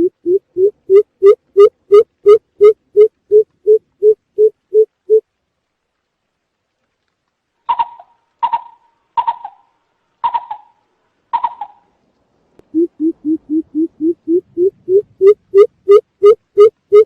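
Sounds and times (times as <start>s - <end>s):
deep low bird hoots: 12.7s - 17.0s.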